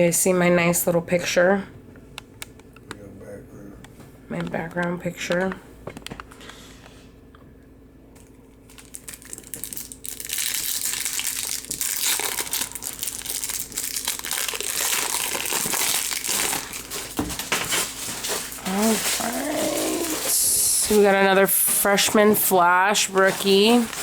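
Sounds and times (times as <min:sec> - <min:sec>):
wrapper being torn and crinkled: 0:08.6 - 0:21.2, 0:22.8 - 0:24.0.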